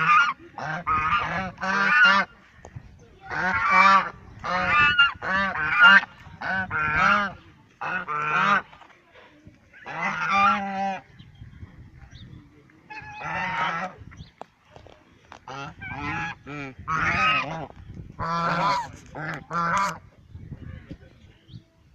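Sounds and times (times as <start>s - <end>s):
waterfowl honking: 0.0s - 2.3s, 3.3s - 8.7s, 9.8s - 11.1s, 12.9s - 14.0s, 15.4s - 17.6s, 18.2s - 20.0s.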